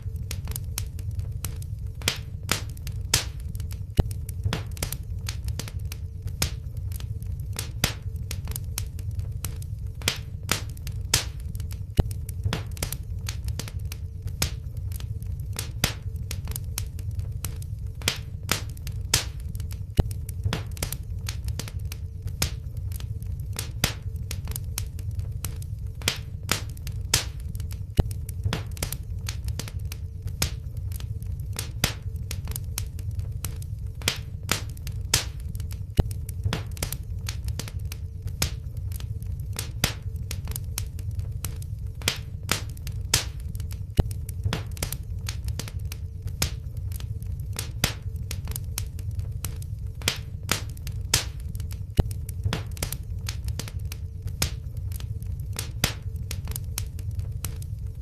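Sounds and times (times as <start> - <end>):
faint steady hum: 0.0 - 58.0
low rumble of flames: 0.0 - 58.0
wood fire crackling and popping: 0.0 - 58.0.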